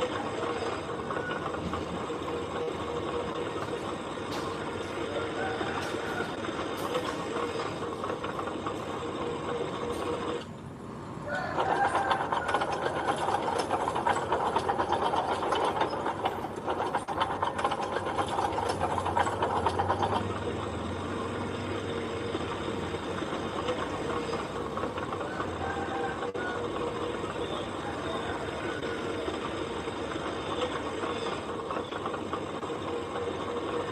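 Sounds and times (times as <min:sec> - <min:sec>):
heavy machinery clattering: 0:00.0 - 0:10.6, 0:11.3 - 0:33.9.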